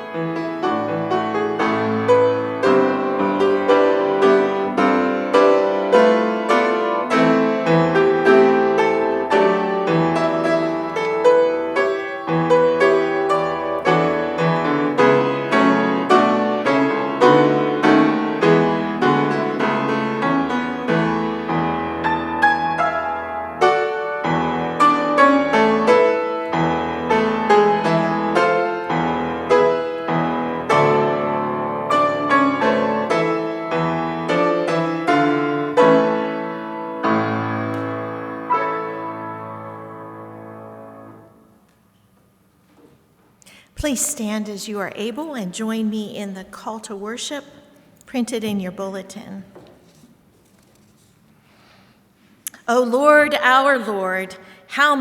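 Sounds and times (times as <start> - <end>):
solo piano piece: 0.0 - 42.5.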